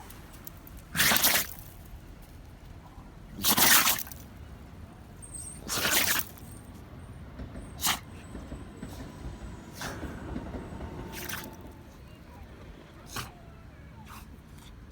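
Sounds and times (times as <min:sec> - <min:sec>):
dog sneezing: 0:00.9 - 0:01.6, 0:03.4 - 0:04.2, 0:05.4 - 0:06.5, 0:07.8 - 0:08.1.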